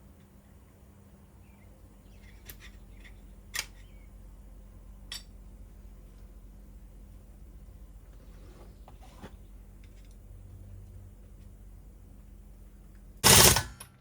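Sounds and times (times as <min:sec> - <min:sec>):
steady low hum: 0:00.0 - 0:14.0
sharp clicks of tools: 0:02.3 - 0:03.9.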